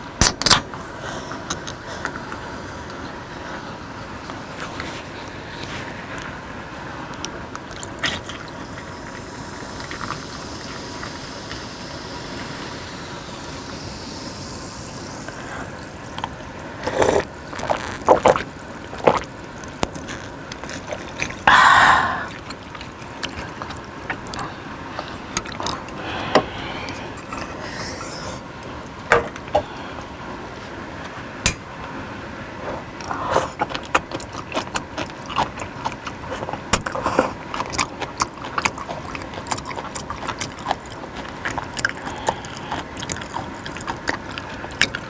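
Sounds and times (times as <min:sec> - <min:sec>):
background hiss: 0:00.0 - 0:33.6
person eating noisily: 0:04.3 - 0:45.0.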